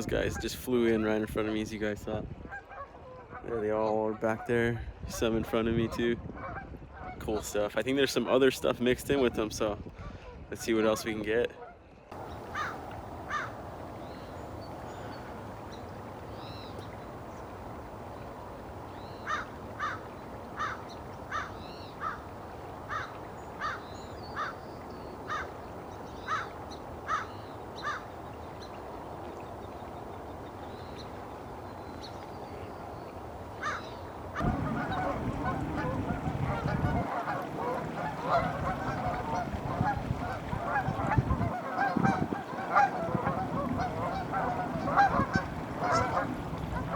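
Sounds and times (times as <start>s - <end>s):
geese honking: 12.2s - 46.9s.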